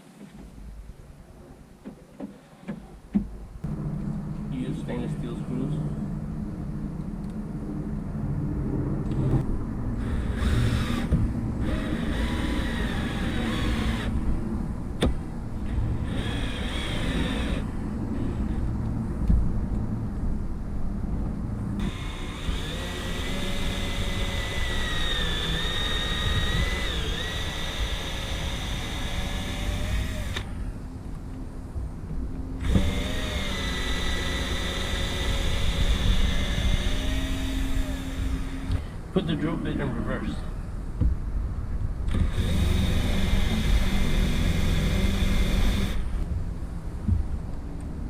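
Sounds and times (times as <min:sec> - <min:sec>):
low rumble: 0:03.3 - 0:12.9
cordless drill driving screws: 0:10.0 - 0:14.1, 0:16.0 - 0:17.7, 0:21.8 - 0:30.5, 0:32.6 - 0:38.9, 0:42.1 - 0:46.1.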